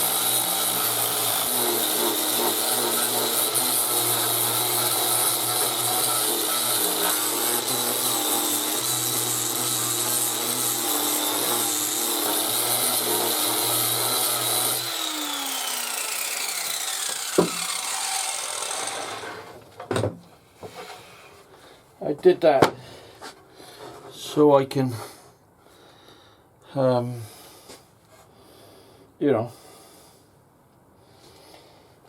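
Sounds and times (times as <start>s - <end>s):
table saw coasting down: 0.0s - 20.1s.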